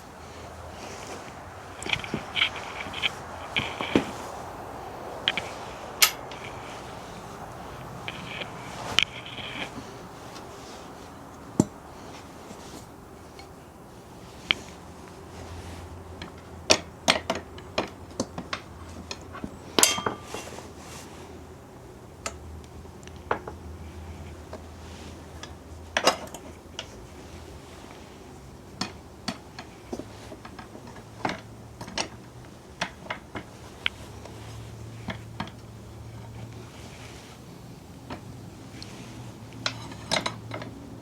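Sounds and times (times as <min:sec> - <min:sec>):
sharp metal knocks: 0:06.0 - 0:06.4
metallic clinks of hand tools: 0:06.0 - 0:06.5.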